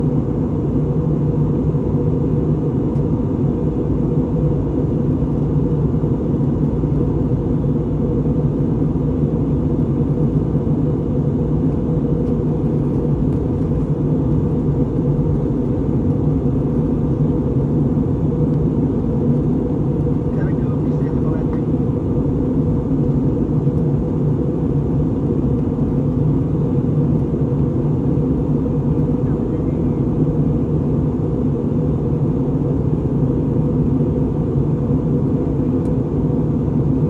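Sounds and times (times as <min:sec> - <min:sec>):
airliner cabin low rumble: 0:00.0 - 0:37.0.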